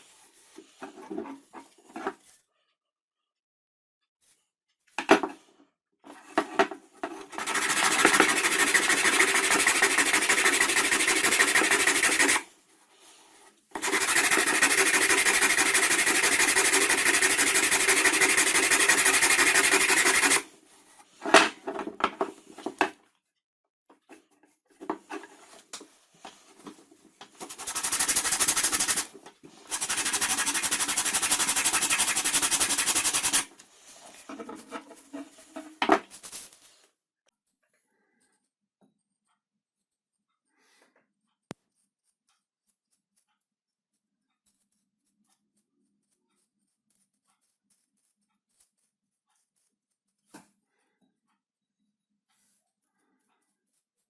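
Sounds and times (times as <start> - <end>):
scroll saw buzzing: 7.3 - 12.4, 13.8 - 20.5, 27.4 - 33.5.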